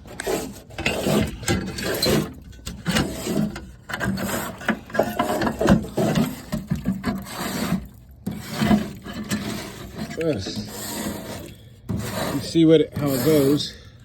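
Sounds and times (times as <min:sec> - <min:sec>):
sheet metal rubbing and scraping: 0:00.0 - 0:13.8.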